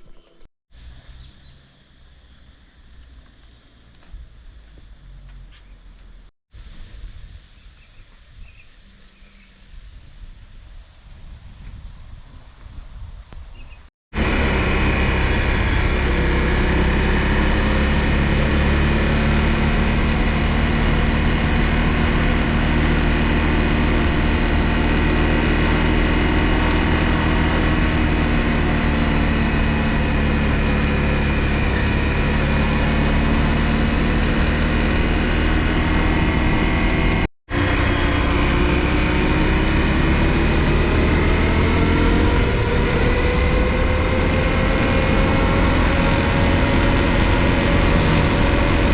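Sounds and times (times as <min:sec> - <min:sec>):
motorcycle engine running: 0:14.2 - 0:48.9.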